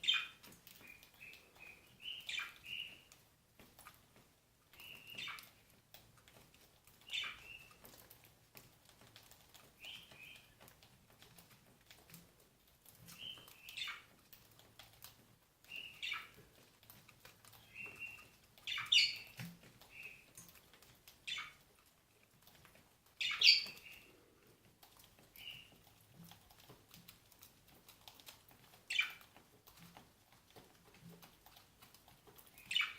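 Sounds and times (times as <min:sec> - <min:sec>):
cockatiels chirping: 0:00.0 - 0:03.2, 0:04.8 - 0:05.6, 0:07.0 - 0:07.8, 0:13.0 - 0:14.2, 0:15.7 - 0:16.5, 0:17.6 - 0:20.3, 0:23.2 - 0:24.1, 0:25.4 - 0:25.8, 0:28.9 - 0:29.3, 0:32.5 - 0:32.9.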